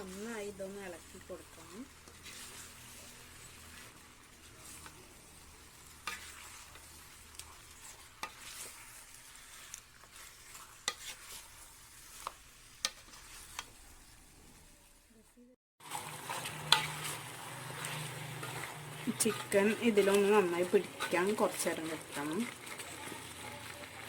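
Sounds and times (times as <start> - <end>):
soft sizzle of frying food: 0.0 - 24.0.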